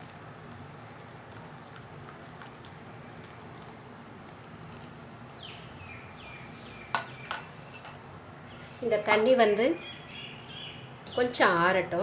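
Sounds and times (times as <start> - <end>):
bird chirping: 5.4 - 7.3, 9.8 - 11.3.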